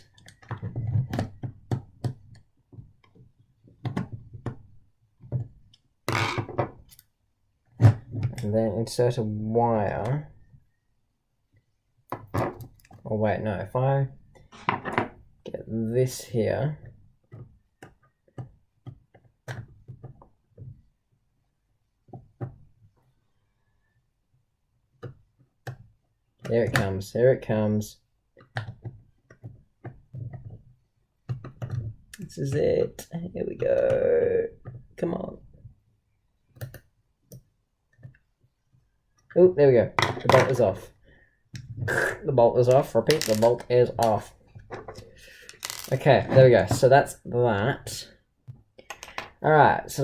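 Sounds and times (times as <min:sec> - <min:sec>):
small clicks and taps of parts: 0:16.8 - 0:20.9, 0:24.9 - 0:26.9, 0:28.3 - 0:34.0, 0:36.4 - 0:39.4, 0:48.4 - 0:49.4.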